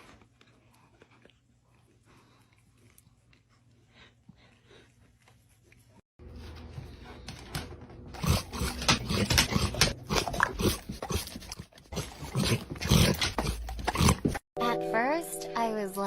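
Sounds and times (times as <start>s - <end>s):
dog sounds: 8.2s - 14.4s.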